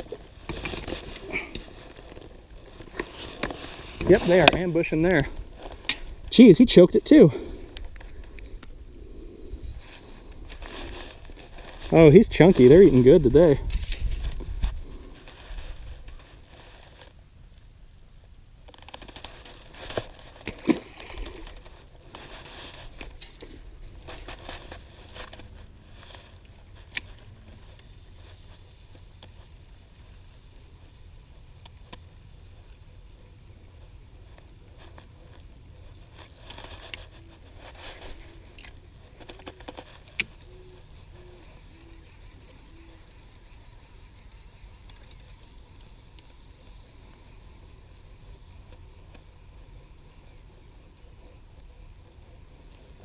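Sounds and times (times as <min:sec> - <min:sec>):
handling rustling and clicking: 0:00.0 - 0:06.6, 0:34.2 - 0:46.8
crunching and scraping: 0:00.0 - 0:17.2, 0:18.6 - 0:32.7, 0:33.4 - 0:53.0.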